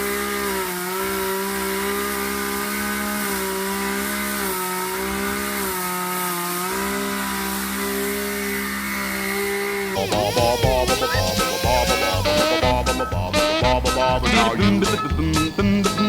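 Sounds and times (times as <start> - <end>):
chainsaw cutting wood: 0.0 - 16.0
swing music: 10.0 - 16.0.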